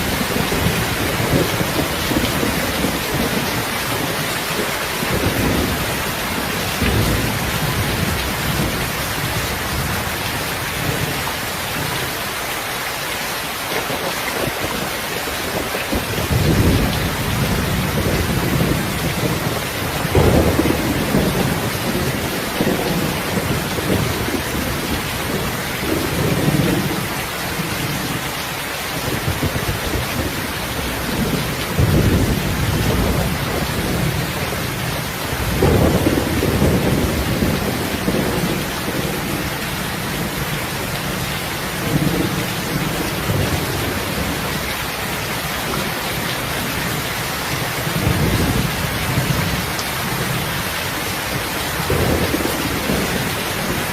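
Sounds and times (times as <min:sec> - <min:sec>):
steady rain: 0:00.0 - 0:53.9
thunder rolling: 0:15.4 - 0:28.0, 0:29.1 - 0:41.2, 0:51.2 - 0:53.9.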